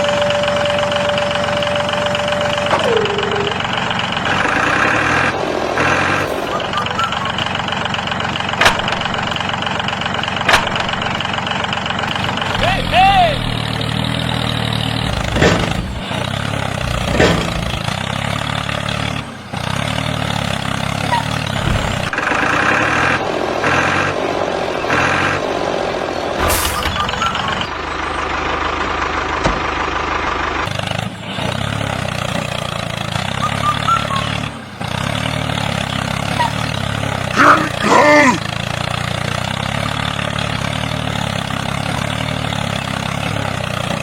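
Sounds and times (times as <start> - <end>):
diesel engine idling: 0.0 - 44.0
pulsing high-pitched sound: 2.7 - 4.4.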